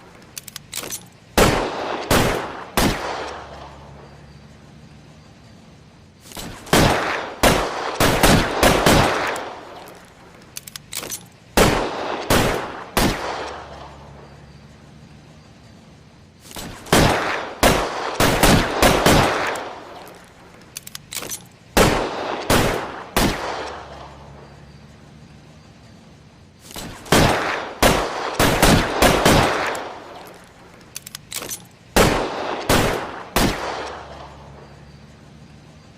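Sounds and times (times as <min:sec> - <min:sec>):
quiet gun clicks: 0:00.0 - 0:01.4, 0:07.4 - 0:11.6, 0:18.0 - 0:21.8, 0:28.2 - 0:32.0.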